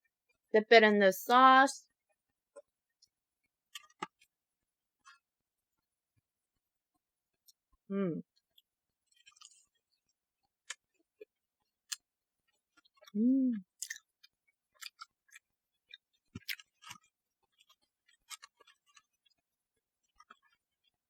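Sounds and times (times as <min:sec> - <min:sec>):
crunching and chewing food: 0:02.1 - 0:04.4, 0:05.0 - 0:21.0
person humming: 0:13.2 - 0:13.6.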